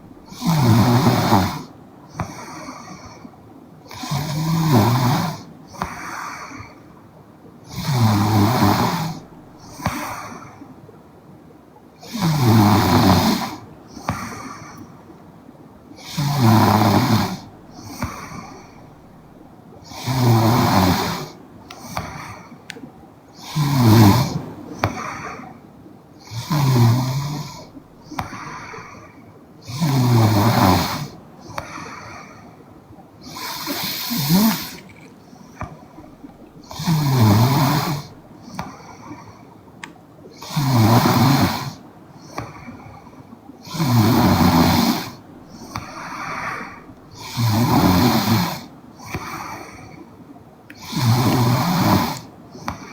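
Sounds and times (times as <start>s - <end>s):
soft breath: 0.0s - 4.3s, 5.3s - 11.0s, 13.3s - 40.6s, 41.6s - 47.7s
woman snoring: 0.3s - 1.7s, 3.9s - 5.4s, 7.7s - 9.2s, 12.1s - 13.6s, 16.0s - 18.7s, 19.9s - 21.4s, 23.4s - 24.4s, 26.2s - 27.7s, 29.6s - 31.2s, 33.2s - 35.1s, 36.6s - 38.1s, 43.7s - 48.7s, 50.8s - 52.2s.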